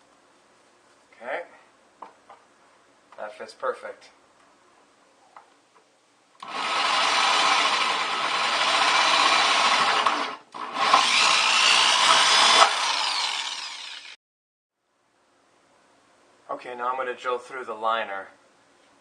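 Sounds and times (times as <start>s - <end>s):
power drill cutting plastic: 6.4s - 14.2s.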